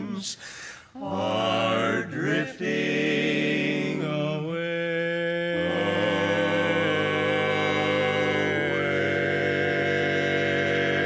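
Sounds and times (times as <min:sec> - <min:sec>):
men singing in close harmony: 0:01.0 - 0:11.0.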